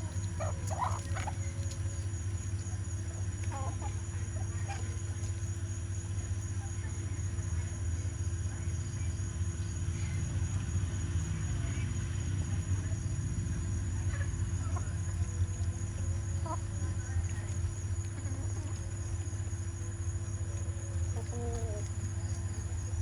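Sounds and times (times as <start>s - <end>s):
insect chirring: 0.0s - 7.2s, 14.5s - 23.0s.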